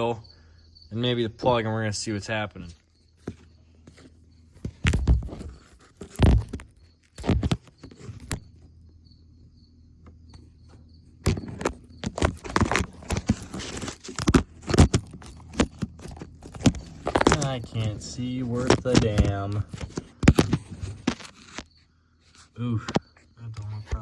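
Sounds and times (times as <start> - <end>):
clicking and rattling of parts: 11.2 - 21.7.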